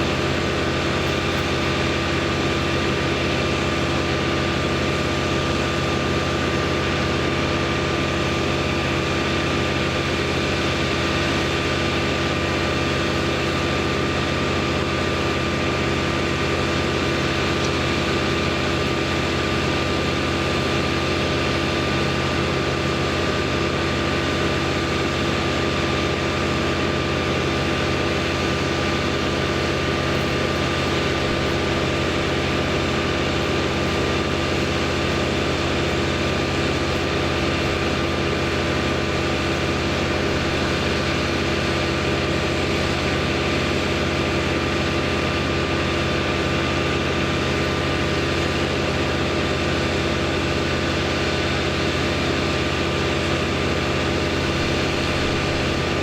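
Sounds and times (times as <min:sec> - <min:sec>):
engine running steadily: 0:00.0 - 0:56.0.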